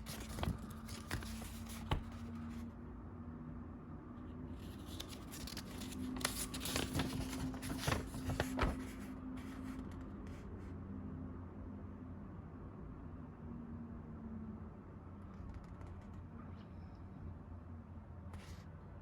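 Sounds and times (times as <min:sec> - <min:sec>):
paper rustling: 0:00.0 - 0:02.7, 0:04.6 - 0:10.1.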